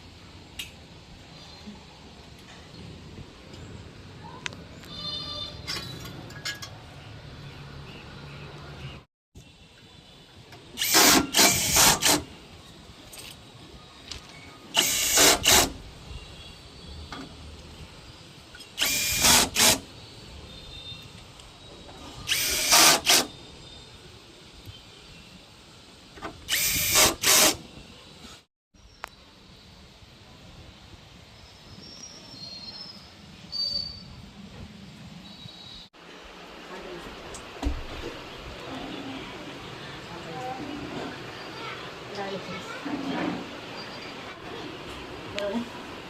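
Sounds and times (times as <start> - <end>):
power drill bursts: 10.8 - 12.3, 14.7 - 15.8, 18.8 - 19.9, 22.3 - 23.3, 26.5 - 27.6.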